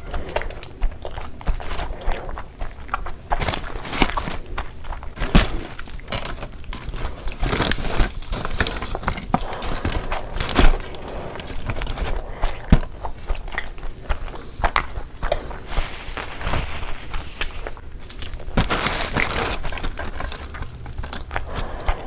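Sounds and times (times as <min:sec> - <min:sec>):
biting and wet chewing: 0:00.0 - 0:22.0
wrapper crackles and clicks: 0:03.3 - 0:12.9, 0:15.7 - 0:21.9.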